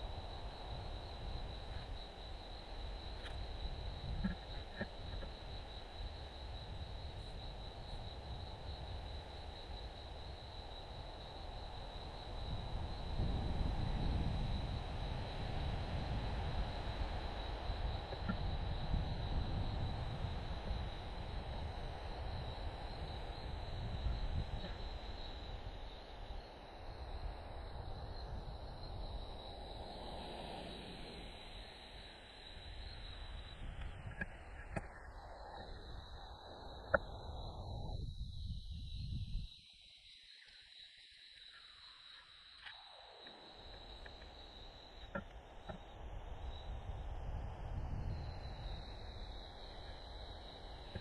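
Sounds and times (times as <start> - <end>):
crickets chirping: 0.0 - 51.0
insect chorus trilling: 0.0 - 51.0.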